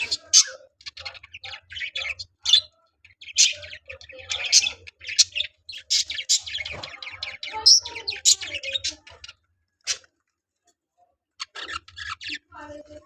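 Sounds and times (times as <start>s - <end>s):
budgerigars chirping: 0.0s - 9.3s, 11.4s - 12.5s.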